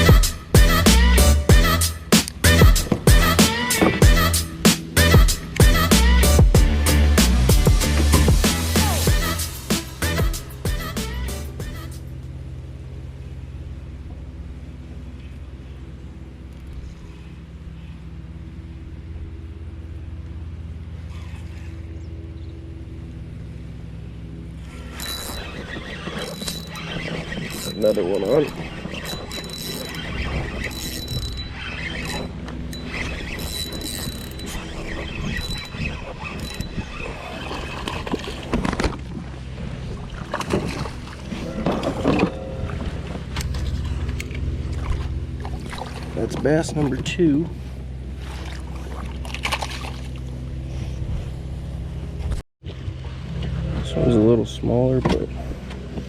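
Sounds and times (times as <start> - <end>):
boat engine humming: 0.0 - 56.0
low steady rumble: 9.2 - 56.0
fish splashing commotion: 44.6 - 46.2, 48.2 - 50.4.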